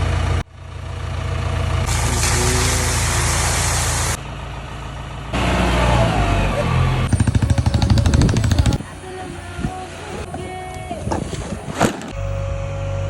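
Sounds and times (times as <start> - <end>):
bulldozer engine rumbling: 0.0 - 13.0
loud hiss: 1.9 - 4.2.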